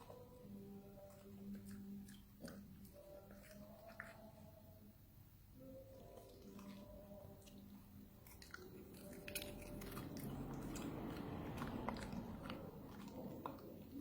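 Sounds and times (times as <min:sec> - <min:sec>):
crunchy snack being chewed: 0:06.0 - 0:14.0.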